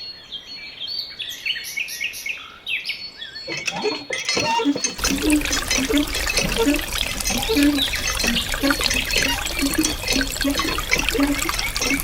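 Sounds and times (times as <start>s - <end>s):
water trickling and gurgling: 3.5s - 12.0s.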